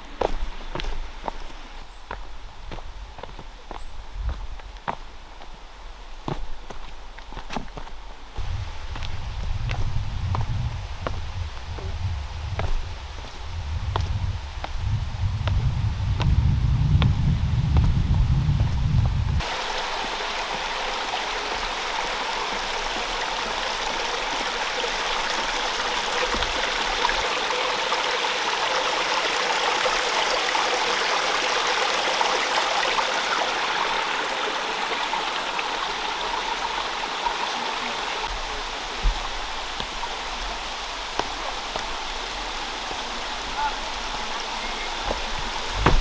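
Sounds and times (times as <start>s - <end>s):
brook water rushing: 0.0s - 46.0s
wind rumble on microphone: 2.4s - 4.8s, 8.4s - 19.5s, 44.2s - 46.0s
soft thump: 45.1s - 46.0s.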